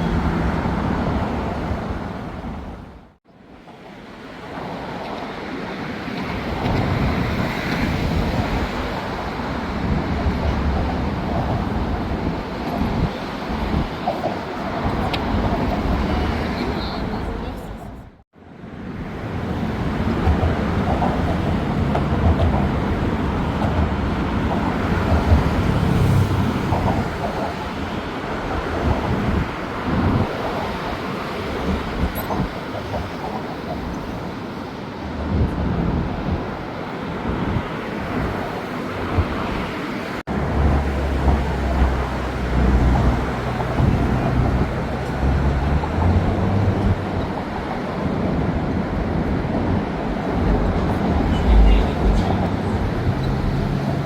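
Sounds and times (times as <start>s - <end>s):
moving vehicle rumble: 0.0s - 3.2s, 19.1s - 34.2s, 37.3s - 54.0s
low engine hum: 49.8s - 54.0s.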